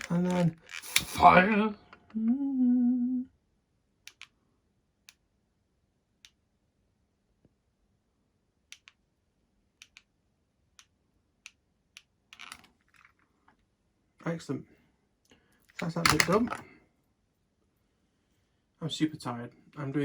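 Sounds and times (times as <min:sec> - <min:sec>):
sharp clicks: 0:04.1 - 0:04.4, 0:09.8 - 0:10.1, 0:15.7 - 0:16.6
rustling clicks: 0:12.3 - 0:13.3, 0:15.7 - 0:16.6.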